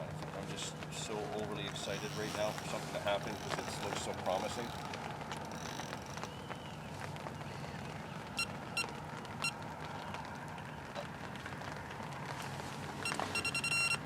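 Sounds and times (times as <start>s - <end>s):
outdoor hiss: 0.3s - 9.4s
short electronic beeps: 13.0s - 14.0s.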